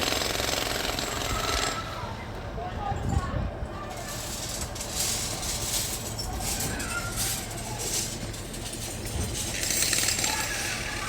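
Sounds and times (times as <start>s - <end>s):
rubble scraping and clattering: 4.0s - 10.6s.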